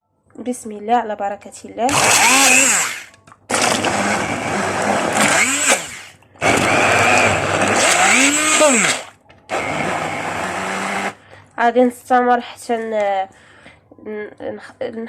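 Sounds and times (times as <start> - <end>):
electric blender motor: 1.9 - 11.2.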